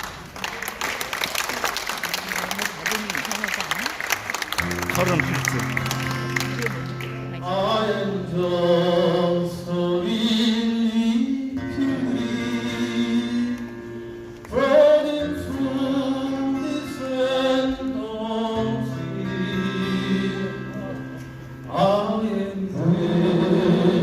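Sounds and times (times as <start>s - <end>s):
strummed acoustic guitars: 4.6s - 24.0s
male vocal quartet singing: 7.4s - 13.8s, 14.5s - 21.0s, 21.7s - 24.0s.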